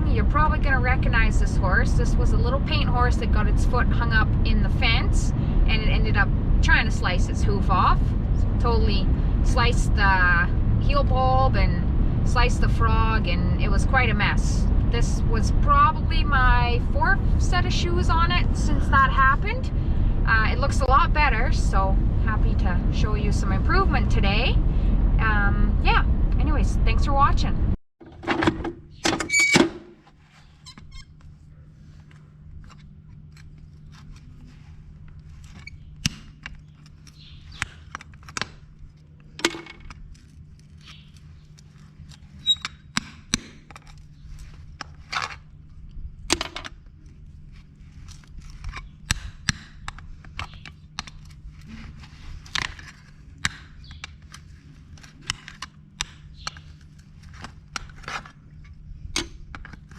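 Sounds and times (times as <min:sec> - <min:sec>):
low hum: 0:00.0 - 0:59.9
hoof tools snipping and clicking: 0:48.1 - 0:51.4, 0:52.4 - 0:58.2.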